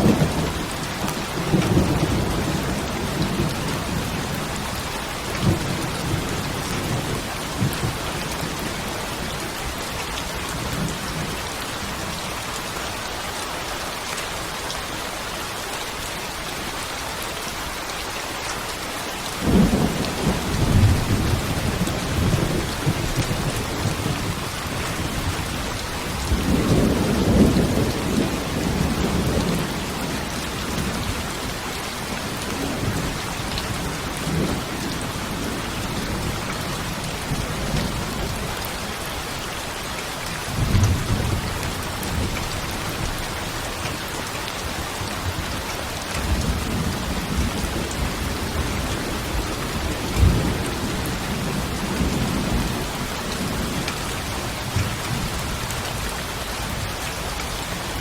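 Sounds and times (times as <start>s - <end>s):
heavy rain: 0.0s - 58.0s.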